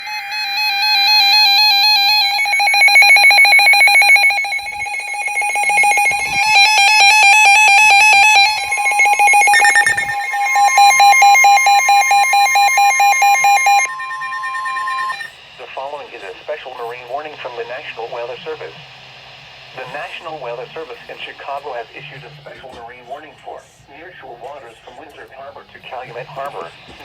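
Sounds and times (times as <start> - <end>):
rapidly pulsing alarm beeps: 0.0 - 18.7
steady warning alarm tone: 0.0 - 18.8.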